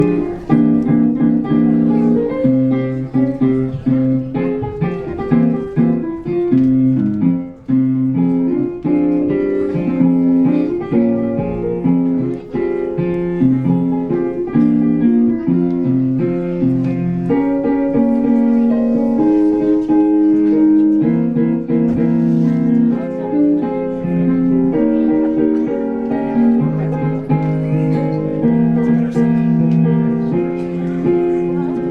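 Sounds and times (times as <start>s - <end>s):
piano music: 0.0s - 31.9s.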